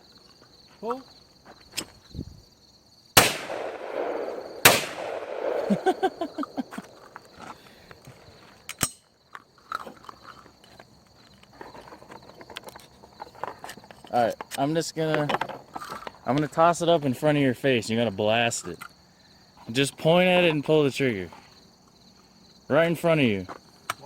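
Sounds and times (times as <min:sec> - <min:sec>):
shotgun shots echoing: 0:03.2 - 0:07.1.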